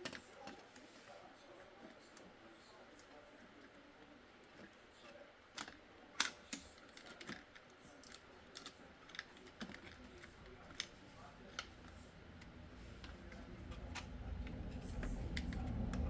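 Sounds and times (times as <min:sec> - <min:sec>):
small tools clicking and tapping: 0:00.0 - 0:00.7, 0:04.4 - 0:16.0.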